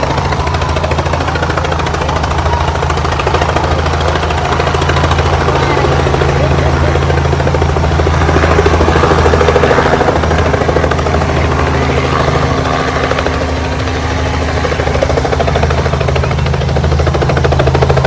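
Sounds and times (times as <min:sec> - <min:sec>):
helicopter engine drone: 0:00.0 - 0:18.0
helicopter rotor chopping: 0:00.0 - 0:18.0.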